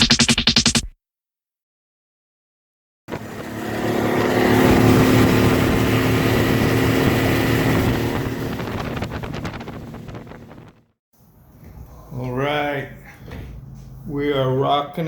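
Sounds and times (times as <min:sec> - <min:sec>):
electric sewing machine running: 0:03.1 - 0:10.7.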